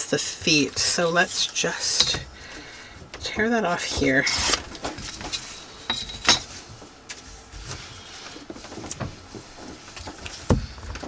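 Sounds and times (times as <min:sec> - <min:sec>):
dull thump: 0:10.4 - 0:11.0.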